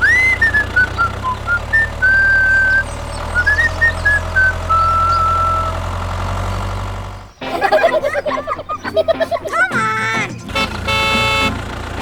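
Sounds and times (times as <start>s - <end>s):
low motor hum: 0.0s - 9.1s, 10.3s - 12.0s
high-pitched tune: 7.4s - 11.9s.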